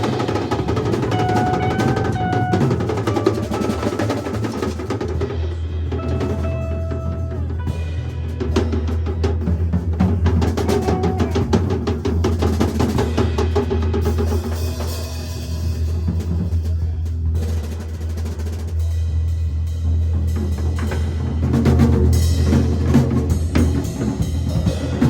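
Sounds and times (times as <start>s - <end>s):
fast drum hits: 0.0s - 14.8s
low bass drone: 0.0s - 25.0s
rock band playing: 0.0s - 25.0s.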